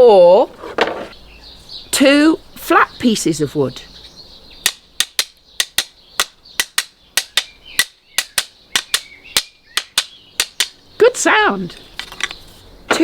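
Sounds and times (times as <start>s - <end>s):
wood pieces clapping together: 4.6s - 10.8s.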